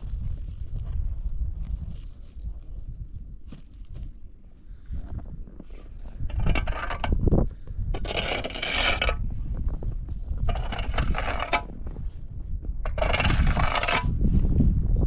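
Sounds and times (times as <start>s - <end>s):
wind rumble on microphone: 0.0s - 15.0s
scraping strokes: 5.6s - 7.3s, 8.0s - 9.3s, 10.4s - 11.7s, 12.8s - 14.2s.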